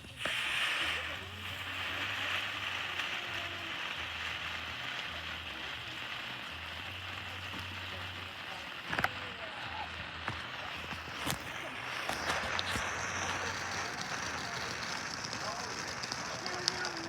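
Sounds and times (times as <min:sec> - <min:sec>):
firework fountain hissing: 0:00.0 - 0:17.0.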